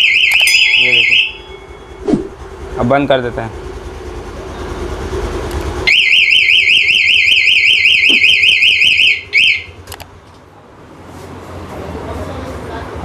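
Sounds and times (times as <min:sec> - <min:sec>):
electronic alarm siren warbling: 0:00.0 - 0:02.4, 0:05.9 - 0:09.7
scooter engine running: 0:00.0 - 0:10.3.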